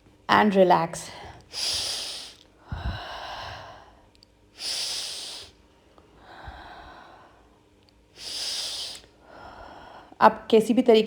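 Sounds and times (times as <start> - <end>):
person breathing slowly: 1.1 - 7.6, 8.2 - 10.2.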